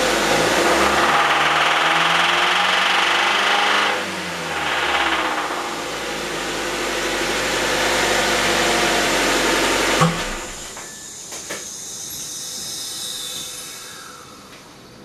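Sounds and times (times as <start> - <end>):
car engine idling with knock: 0.0 - 10.9
single thump: 10.0 - 10.9.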